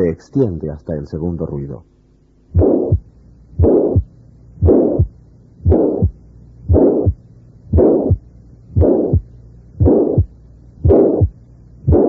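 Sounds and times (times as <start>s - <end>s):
heartbeat with murmur: 2.5s - 12.0s.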